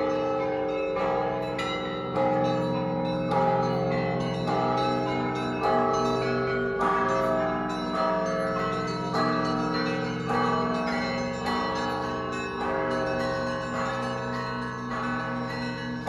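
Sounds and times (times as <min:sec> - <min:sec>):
church bells ringing: 0:00.0 - 0:16.0.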